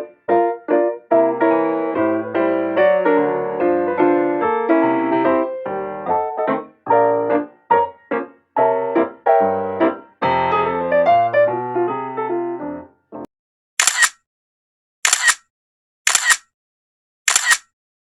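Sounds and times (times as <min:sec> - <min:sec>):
solo piano music: 0:00.0 - 0:13.3
camera shutter clicks: 0:13.8 - 0:14.2, 0:15.0 - 0:15.4, 0:16.1 - 0:16.5, 0:17.3 - 0:17.7.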